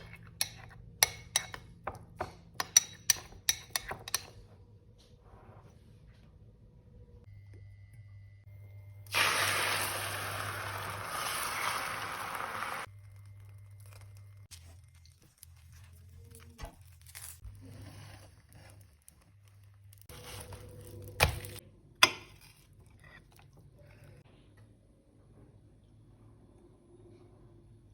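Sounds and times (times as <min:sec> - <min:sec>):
egg sizzling in frying pan: 0:09.1 - 0:13.3.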